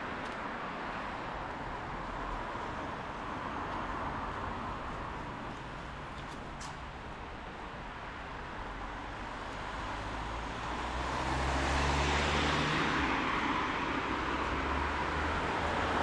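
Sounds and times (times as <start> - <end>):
car passing on wet street: 9.4 - 16.0.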